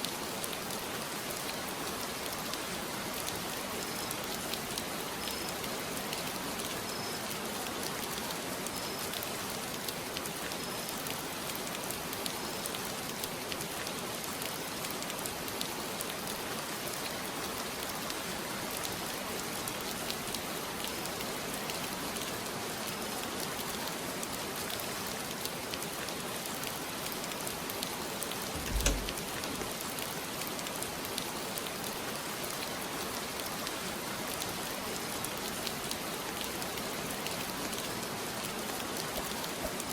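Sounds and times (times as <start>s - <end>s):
steady rain falling: 0.0s - 39.9s
low thump: 28.6s - 29.3s.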